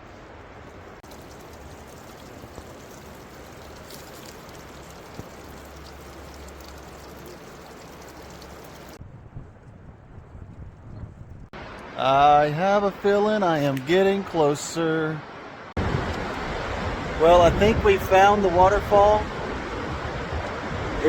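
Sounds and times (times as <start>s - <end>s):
running water rushing: 0.2s - 9.0s, 11.6s - 21.0s.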